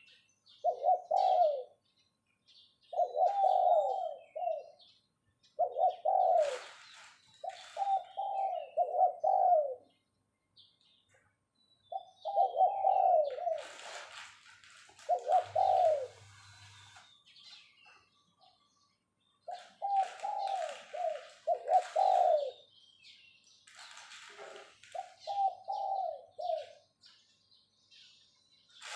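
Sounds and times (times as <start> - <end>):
dove cooing: 0.0 - 1.8, 2.9 - 4.9, 5.6 - 10.0, 11.9 - 14.1, 15.0 - 17.0, 19.5 - 22.7, 24.5 - 26.9.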